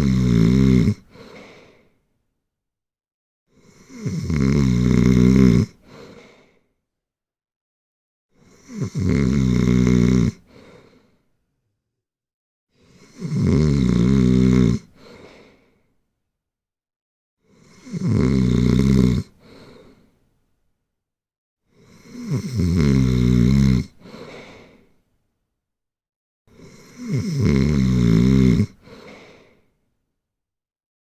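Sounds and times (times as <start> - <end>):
person snoring: 0.0 - 1.5, 3.5 - 6.0, 8.4 - 10.9, 12.9 - 15.3, 17.5 - 20.0, 21.7 - 24.9, 26.5 - 29.6.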